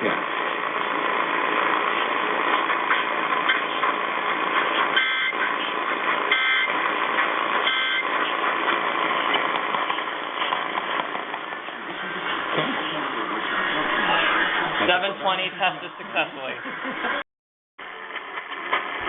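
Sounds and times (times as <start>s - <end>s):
radio hiss: 0.0s - 17.1s
short data tone bursts: 5.0s - 5.4s, 6.3s - 6.7s, 7.6s - 8.1s.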